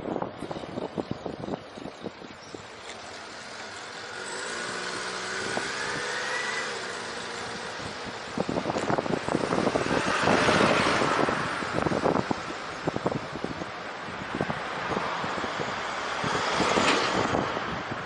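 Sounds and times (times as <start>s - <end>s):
rush of traffic: 0.0s - 18.0s
wind buffeting microphone: 0.0s - 18.0s
vehicle engine passing by: 3.0s - 12.3s.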